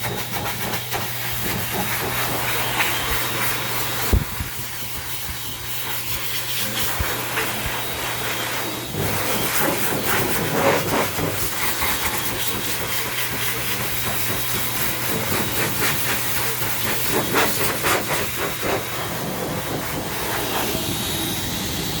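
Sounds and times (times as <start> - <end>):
rubbing and handling noises: 0.0 - 20.9
hair dryer blowing air: 0.0 - 22.0.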